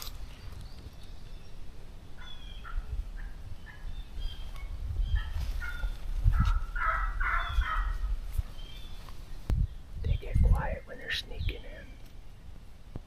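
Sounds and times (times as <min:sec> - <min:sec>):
turkey yelps and clucks: 0:05.1 - 0:08.1.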